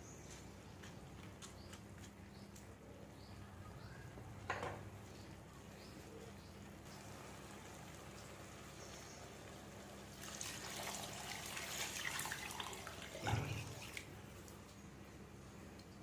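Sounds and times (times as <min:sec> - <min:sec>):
water running and splashing: 0:07.0 - 0:14.8.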